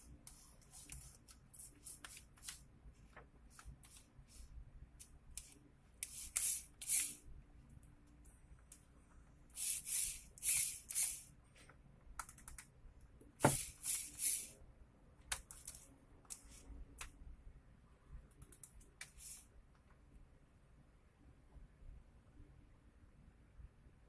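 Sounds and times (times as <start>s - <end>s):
small parts clicking: 5.0s - 7.2s, 9.6s - 11.3s
short hissing scrapes: 19.1s - 19.4s.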